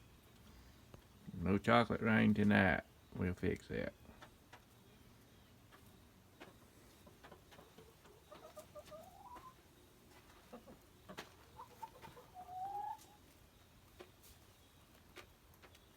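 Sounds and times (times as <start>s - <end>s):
chickens calling softly: 4.0s - 15.9s.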